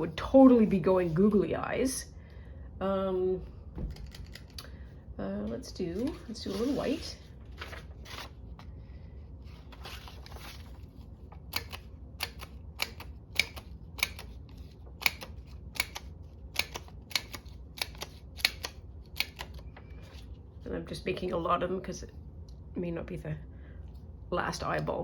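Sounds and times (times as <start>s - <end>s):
paper cutter soft strokes: 6.0s - 8.3s.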